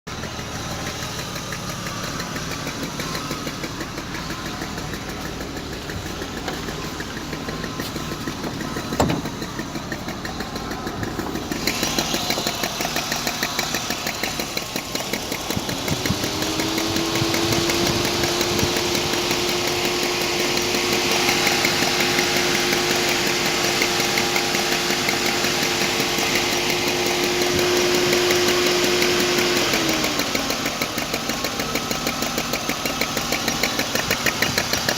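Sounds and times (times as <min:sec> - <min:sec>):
car engine knocking: 0:00.1 - 0:34.9
steady whine: 0:00.5 - 0:21.7.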